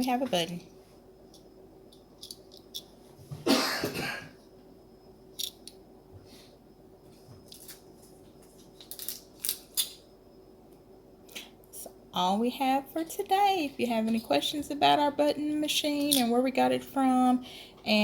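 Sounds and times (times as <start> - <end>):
person coughing: 3.4 - 4.4.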